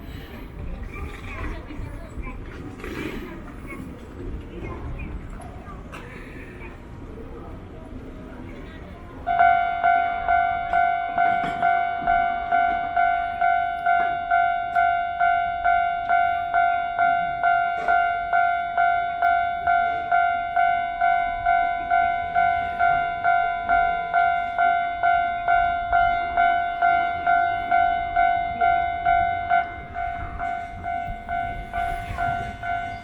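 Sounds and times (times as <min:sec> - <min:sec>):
electronic crossing bell dinging: 0:09.3 - 0:33.0.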